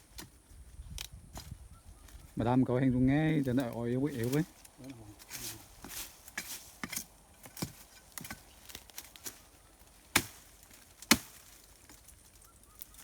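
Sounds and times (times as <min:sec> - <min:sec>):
digging tool striking stony soil: 0:00.0 - 0:01.6, 0:05.2 - 0:09.4, 0:10.1 - 0:12.0.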